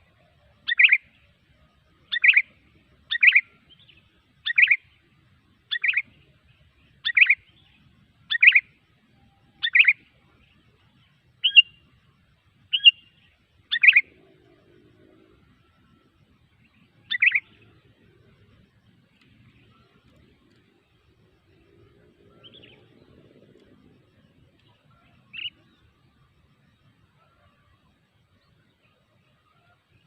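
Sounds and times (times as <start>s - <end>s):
bird chattering call: 13.7s - 14.2s, 17.1s - 17.6s.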